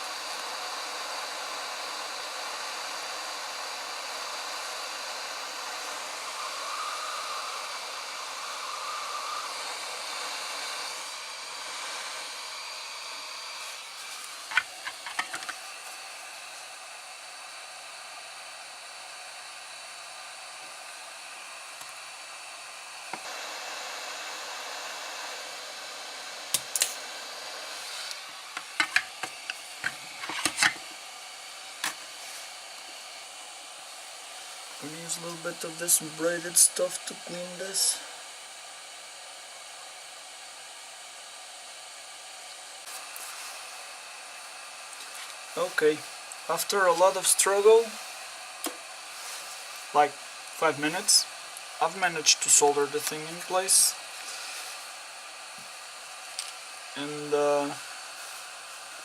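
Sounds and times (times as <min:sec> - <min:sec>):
hot air station blowing air: 0:00.0 - 0:59.0.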